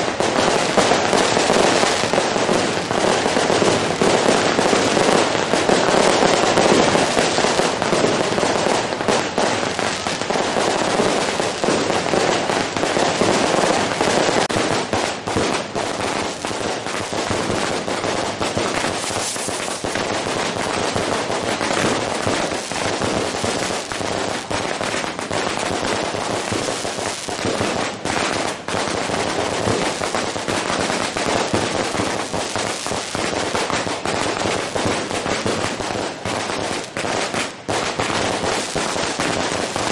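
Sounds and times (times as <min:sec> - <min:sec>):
firecrackers crackling: 0:00.0 - 0:39.9.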